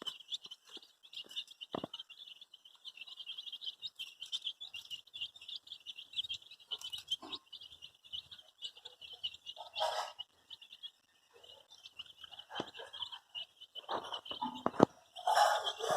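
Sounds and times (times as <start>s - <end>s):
baby chicks peeping: 0.0s - 15.9s.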